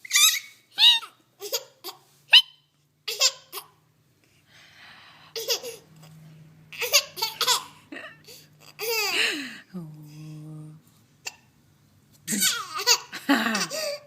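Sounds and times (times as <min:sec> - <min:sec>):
baby giggling: 0:05.4 - 0:06.1, 0:06.7 - 0:09.4, 0:12.3 - 0:14.0.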